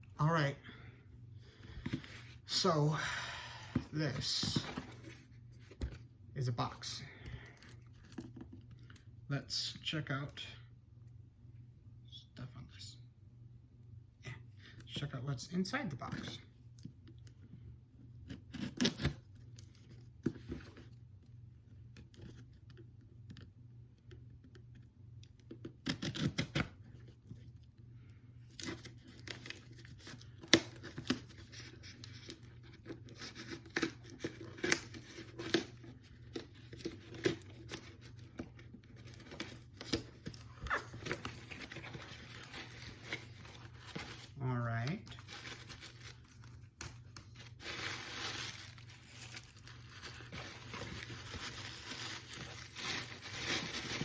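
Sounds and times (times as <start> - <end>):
cardboard box being opened: 3.8 - 5.9, 36.3 - 44.4, 47.3 - 54.0.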